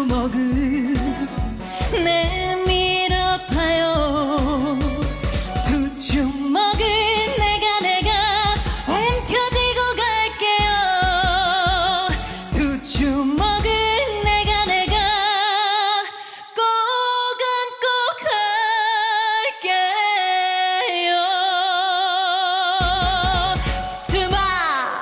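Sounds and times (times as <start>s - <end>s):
band bass and drums: 0.0s - 15.1s, 22.8s - 24.6s.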